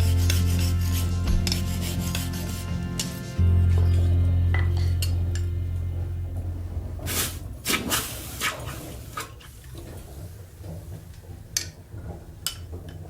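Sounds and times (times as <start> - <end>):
faint low hum: 3.4 - 12.4.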